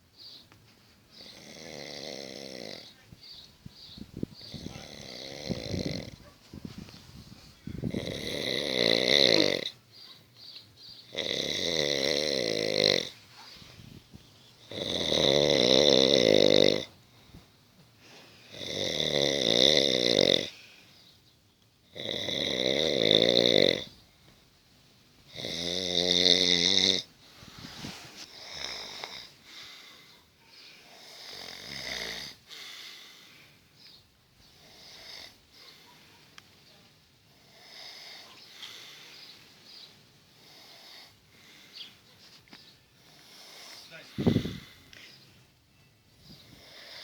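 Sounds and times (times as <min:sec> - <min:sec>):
person snoring loudly: 0:01.2 - 0:02.9, 0:04.4 - 0:06.2, 0:07.7 - 0:09.7, 0:11.1 - 0:13.2, 0:14.7 - 0:17.0, 0:18.5 - 0:20.6, 0:21.9 - 0:23.9, 0:25.3 - 0:27.1, 0:28.3 - 0:29.3, 0:31.0 - 0:32.8, 0:43.0 - 0:44.8.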